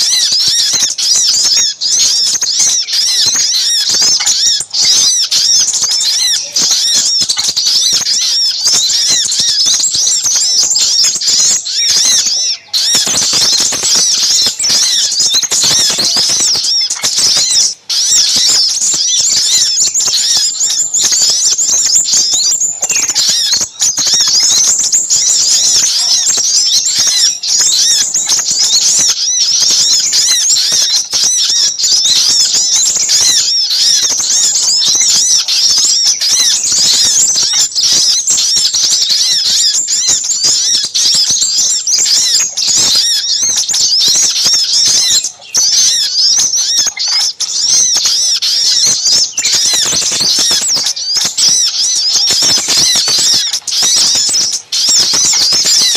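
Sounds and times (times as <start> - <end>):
small birds chirping rapidly: 0.0 - 55.9.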